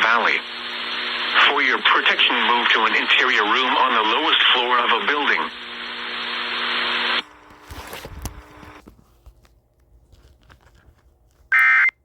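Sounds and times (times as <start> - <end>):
faint rustling and crackling: 7.4 - 11.5.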